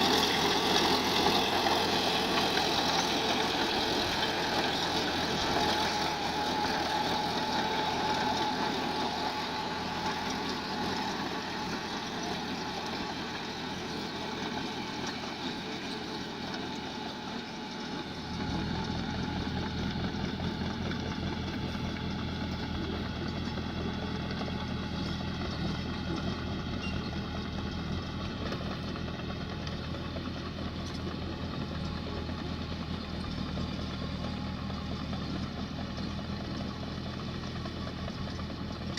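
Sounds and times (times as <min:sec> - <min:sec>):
excavator engine running: 0:00.0 - 0:38.9
deeper engine note: 0:18.0 - 0:36.8.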